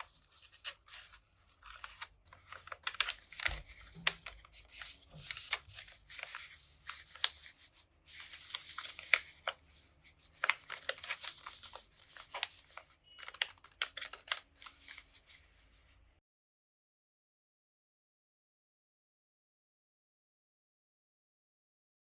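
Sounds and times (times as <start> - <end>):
paper crinkling and rustling: 0.0 - 16.0.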